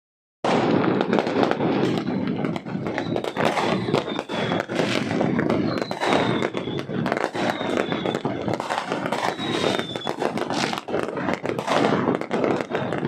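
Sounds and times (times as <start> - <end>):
fireworks popping and crackling: 0.4 - 13.0
faint high whistle: 2.0 - 4.8, 5.5 - 8.4, 9.0 - 10.3.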